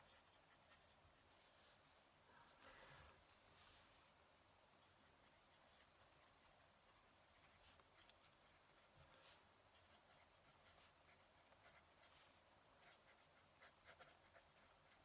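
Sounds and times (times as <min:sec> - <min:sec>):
pen nib scratching on paper: 0:04.8 - 0:15.0.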